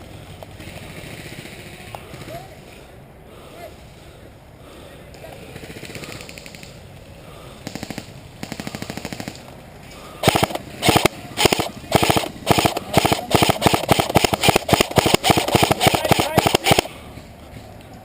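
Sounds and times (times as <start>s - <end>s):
airsoft rifle bursts: 10.2s - 17.0s.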